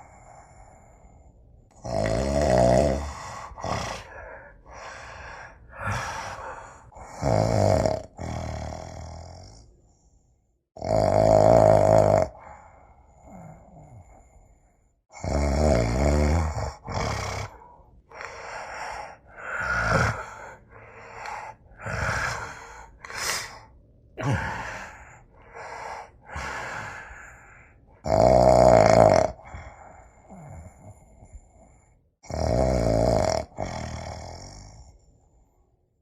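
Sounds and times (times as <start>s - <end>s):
person snoring: 1.7s - 9.7s, 10.8s - 14.4s, 15.1s - 35.0s
breathy snorts: 1.8s - 9.7s, 15.2s - 34.9s.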